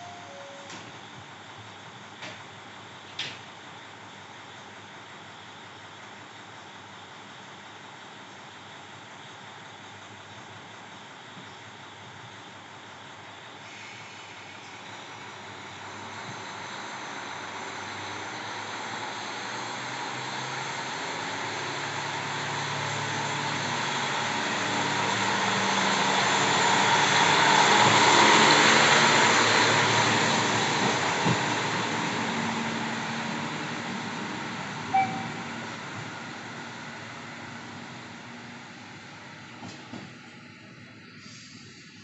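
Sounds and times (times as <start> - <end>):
brief high tone: 0.0 - 0.8, 34.9 - 35.5
diesel railcar engine running: 0.0 - 42.0
train wheels rumbling: 13.9 - 40.3.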